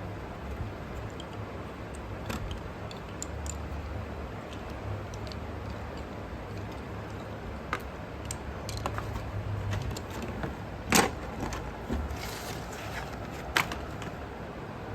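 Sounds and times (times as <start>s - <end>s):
steady low hum: 0.0s - 14.9s
small hard objects clicking: 1.0s - 10.4s.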